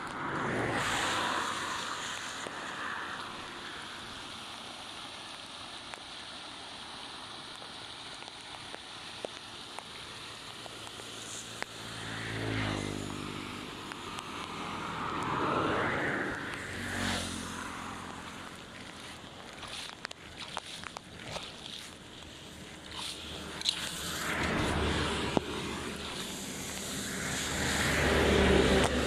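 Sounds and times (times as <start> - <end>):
rain and running water: 0.0 - 29.0
vehicles passing on wet road: 0.0 - 29.0
light ticks: 18.8 - 21.1.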